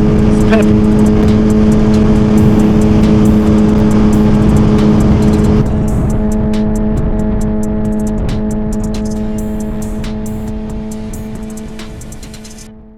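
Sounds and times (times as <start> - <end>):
motorcycle engine cruising: 0.0 - 12.9
music: 0.0 - 12.9
wind noise: 0.0 - 12.9.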